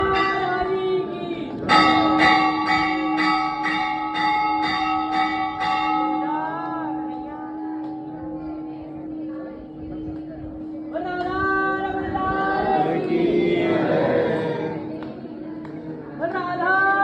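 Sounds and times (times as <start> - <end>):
temple bell ringing: 0.0 - 13.1.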